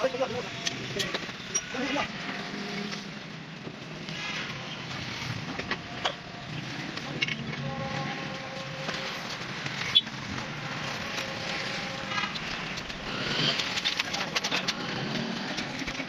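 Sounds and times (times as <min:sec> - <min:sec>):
steady background noise: 0:00.0 - 0:16.0.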